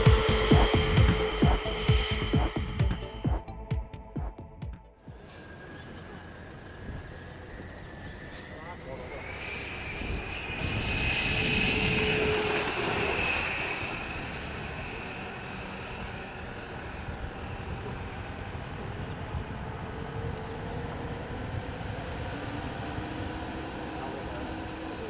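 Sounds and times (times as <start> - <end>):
model jet fan whining: 5.1 - 25.0.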